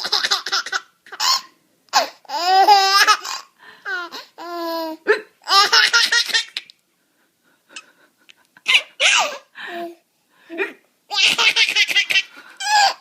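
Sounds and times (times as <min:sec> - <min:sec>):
baby laughing: 0:00.0 - 0:06.7, 0:08.6 - 0:09.5, 0:11.1 - 0:13.0.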